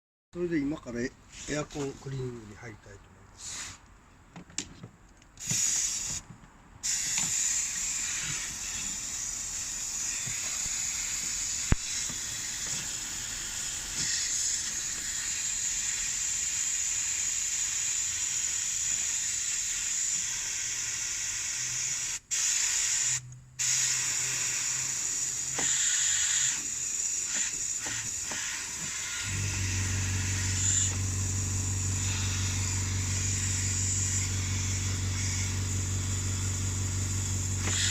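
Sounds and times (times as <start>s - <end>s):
spray hissing: 5.4s - 6.2s, 6.8s - 37.9s
low steady hum: 29.3s - 37.9s.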